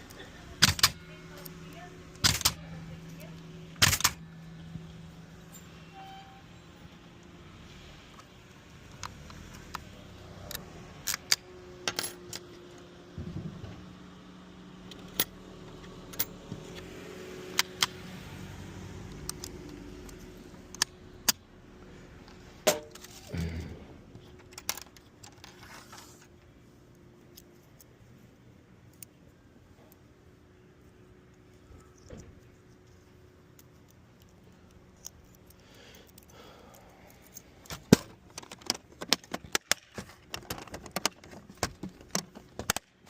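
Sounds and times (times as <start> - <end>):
keys clicking and clinking: 10.5 - 12.6, 24.2 - 25.6, 31.3 - 39.6.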